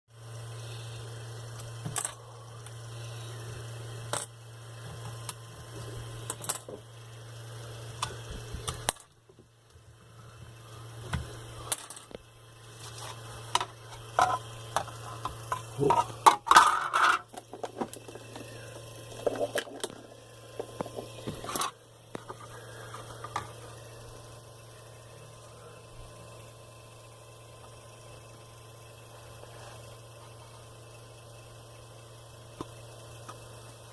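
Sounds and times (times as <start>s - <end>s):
steady low hum: 0.2s - 33.9s
hard objects clicking and clattering: 13.5s - 20.0s.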